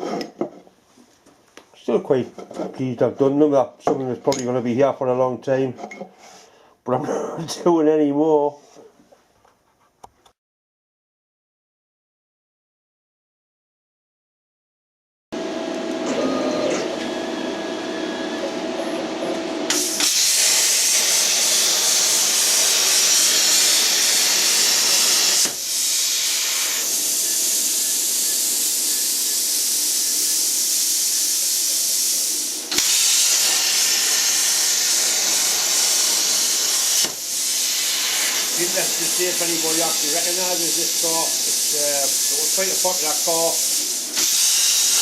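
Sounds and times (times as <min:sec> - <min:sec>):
plasma cutter hissing: 0:19.7 - 0:45.0.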